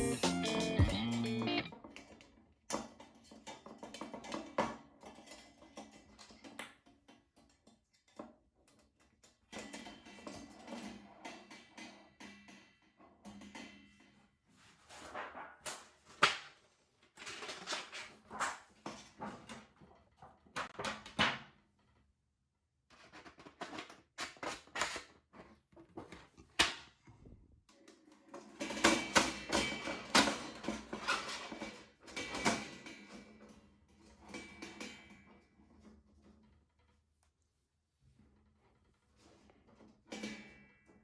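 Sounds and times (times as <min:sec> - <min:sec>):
handling clatter and rustling: 0:02.8 - 0:21.0, 0:22.9 - 0:37.2.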